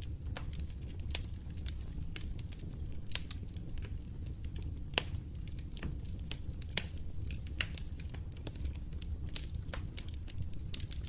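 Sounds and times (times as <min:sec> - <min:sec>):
wood fire crackling: 0:00.0 - 0:11.0.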